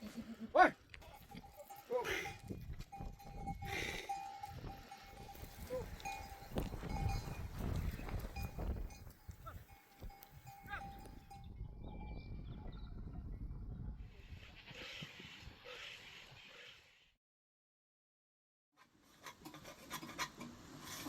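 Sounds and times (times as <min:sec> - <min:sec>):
sheep bells ringing: 0:00.9 - 0:13.8.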